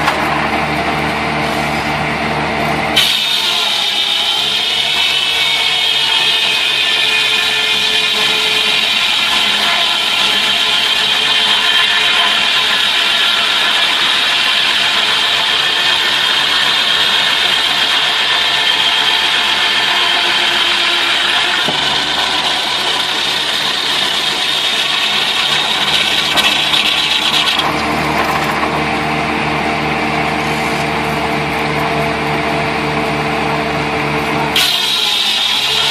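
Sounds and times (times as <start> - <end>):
saw cutting through wood: 2.7 - 35.9
engine hum: 11.2 - 35.2.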